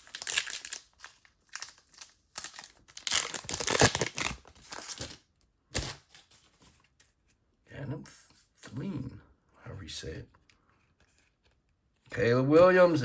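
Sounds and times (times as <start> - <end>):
foil wrapper crinkling: 0.0 - 5.2.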